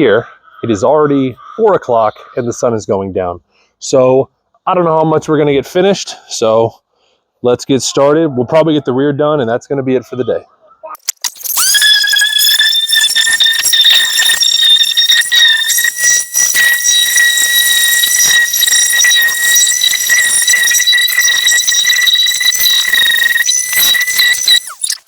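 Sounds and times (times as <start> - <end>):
power tool motor whine: 11.4 - 25.0.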